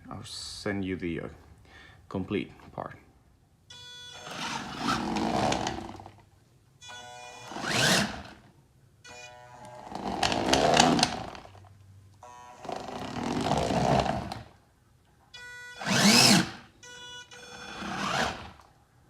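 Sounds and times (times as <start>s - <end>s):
small electric motors spinning up: 7.5s - 8.3s, 15.8s - 16.7s, 17.6s - 18.6s.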